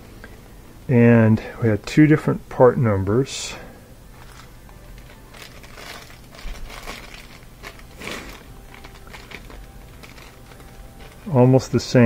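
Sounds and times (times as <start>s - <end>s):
packaging crinkling and rustling: 4.2s - 12.0s.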